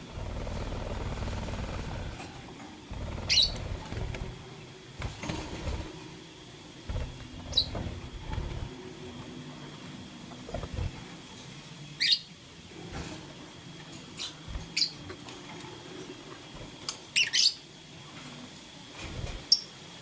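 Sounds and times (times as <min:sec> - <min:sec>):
low rumbling: 0:00.0 - 0:04.4, 0:06.9 - 0:08.7.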